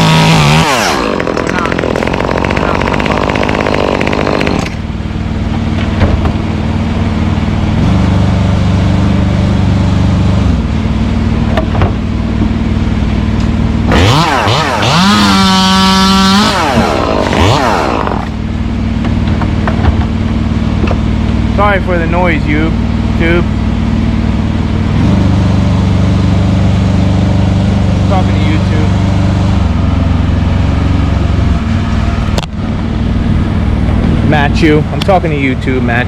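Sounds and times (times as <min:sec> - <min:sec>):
chainsaw idling and revving: 0:00.0 - 0:04.9, 0:13.9 - 0:18.5, 0:24.8 - 0:31.4.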